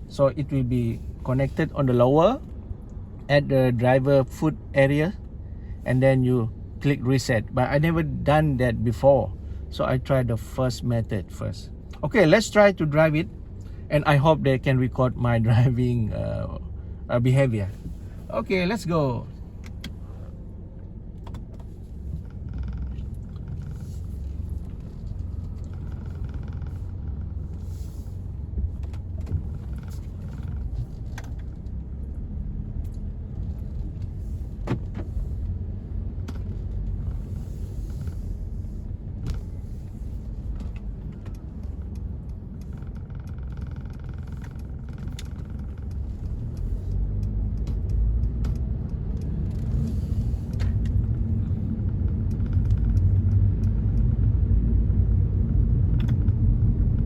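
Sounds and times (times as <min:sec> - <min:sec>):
car engine and road rumble: 0:00.0 - 0:57.0
faint ticks: 0:39.2 - 0:54.3.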